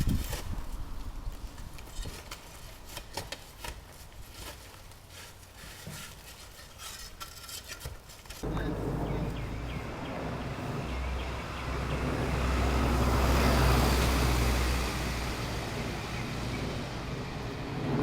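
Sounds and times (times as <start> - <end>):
vehicle passing by: 8.4 - 18.0.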